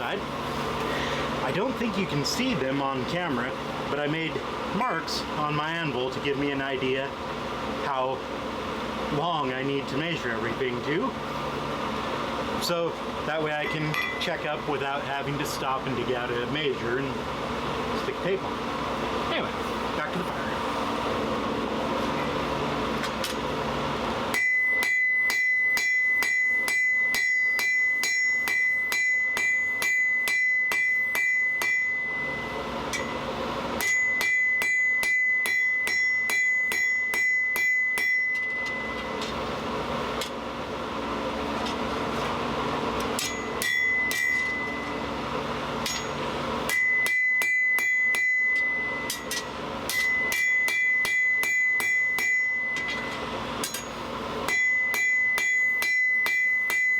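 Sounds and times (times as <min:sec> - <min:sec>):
hammer striking steel on anvil: 0:13.5 - 0:15.6, 0:24.3 - 0:39.4, 0:43.0 - 0:45.1, 0:45.8 - 0:56.9.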